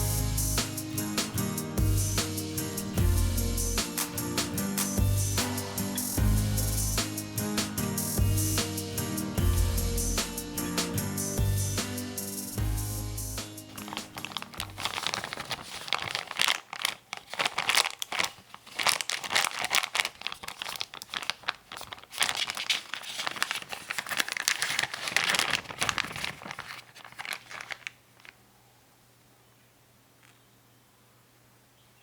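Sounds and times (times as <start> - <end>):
paper crinkling in hands: 13.6 - 28.4.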